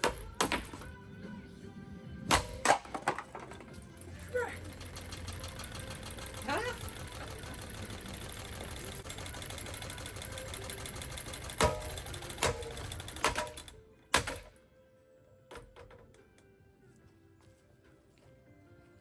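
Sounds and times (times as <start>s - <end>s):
ceiling fan rattling: 2.3s - 14.5s.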